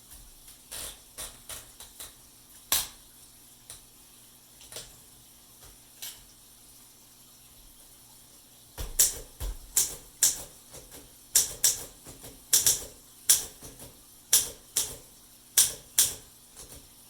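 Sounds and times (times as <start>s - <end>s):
typewriter mechanism clicking: 11.4s - 11.9s, 12.5s - 13.7s.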